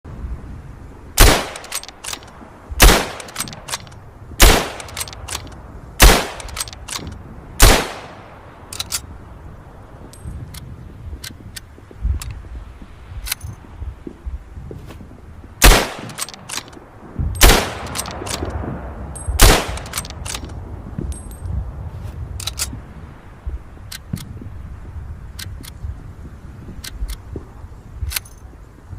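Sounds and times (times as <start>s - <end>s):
rifle shots with echo: 1.2s - 2.2s, 2.8s - 8.2s, 15.6s - 16.7s, 17.4s - 18.6s, 19.3s - 20.4s
sharp clicks and cracks: 1.2s - 9.1s, 15.6s - 18.6s, 19.2s - 21.5s, 22.4s - 22.8s.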